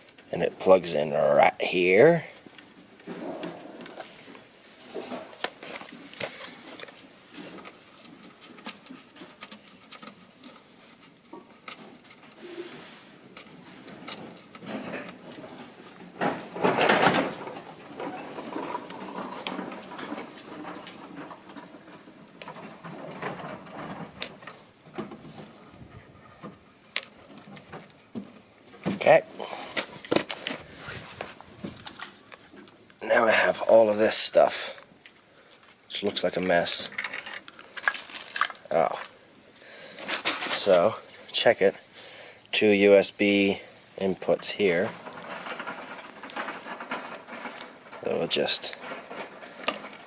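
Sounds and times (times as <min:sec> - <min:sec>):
rustling scrape: 0:02.7 - 0:26.7, 0:29.4 - 0:32.5, 0:36.5 - 0:39.2, 0:39.8 - 0:41.3, 0:43.4 - 0:50.0.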